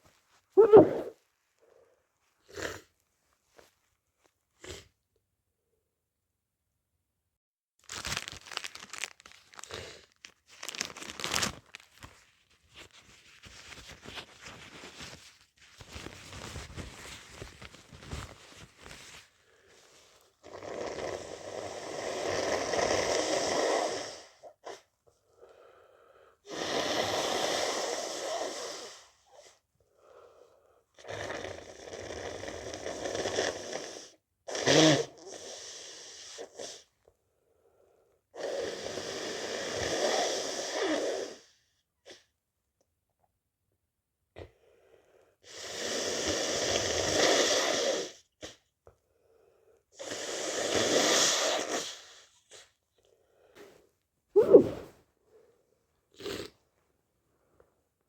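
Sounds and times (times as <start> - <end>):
congested nasal breathing: 0.6 - 1.2, 54.4 - 55.5
person sneezing: 0.6 - 1.2, 54.4 - 55.0
crinkling and rustling: 7.8 - 19.4.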